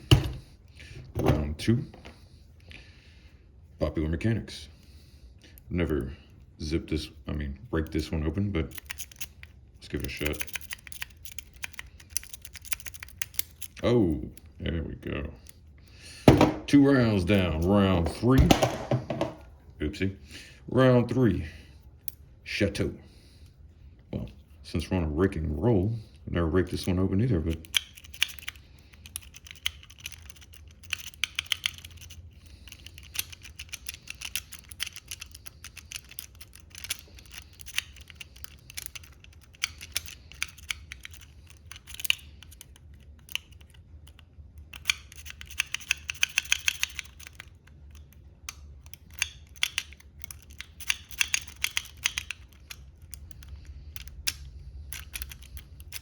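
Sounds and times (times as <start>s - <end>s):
lock pick clicking and scraping: 8.7s - 14.5s, 26.8s - 56.0s.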